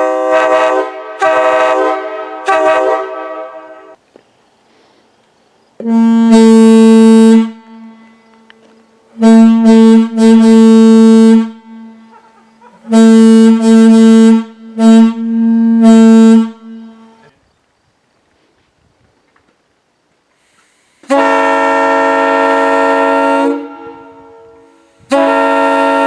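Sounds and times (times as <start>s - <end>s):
train air horn blasts: 0.0s - 4.0s, 5.8s - 12.2s, 12.9s - 17.3s, 20.6s - 26.0s.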